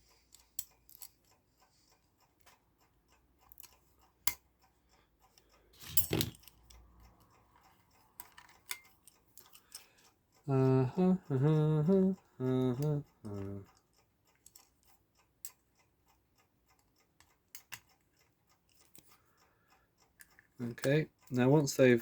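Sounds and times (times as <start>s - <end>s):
small metal clicks and taps: 0.0s - 10.2s, 13.3s - 21.4s.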